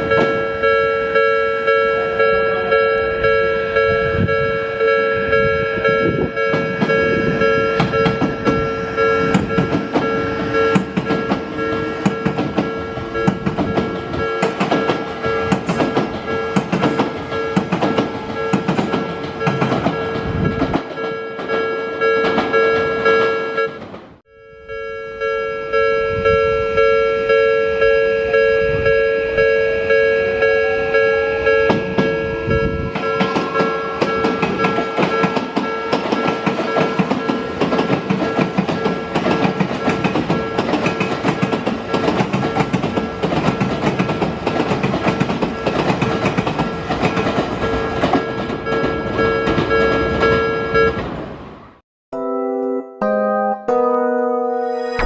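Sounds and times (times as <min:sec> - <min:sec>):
level crossing warning bell: 0:00.0 - 0:51.0
train clattering over rail joints: 0:06.5 - 0:23.2, 0:23.8 - 0:24.2, 0:32.8 - 0:51.3.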